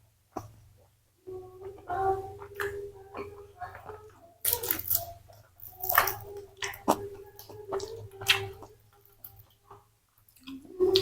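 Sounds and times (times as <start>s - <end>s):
crunchy chewing and biting: 4.4s - 9.4s.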